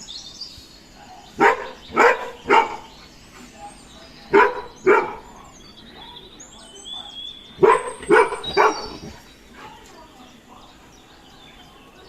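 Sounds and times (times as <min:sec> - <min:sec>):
birds chirping: 0:00.0 - 0:12.0
dog barking: 0:01.4 - 0:03.0, 0:04.3 - 0:06.2, 0:06.9 - 0:09.8.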